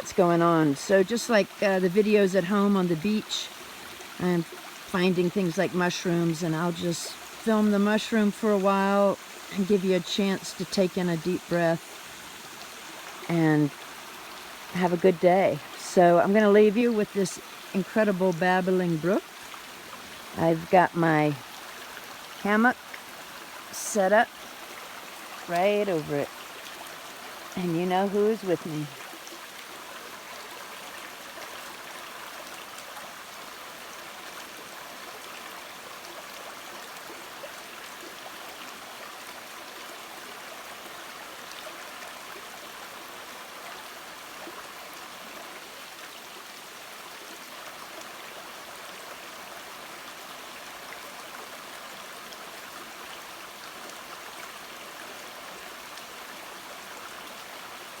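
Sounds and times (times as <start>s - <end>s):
brook babbling over rocks: 0.0s - 58.0s.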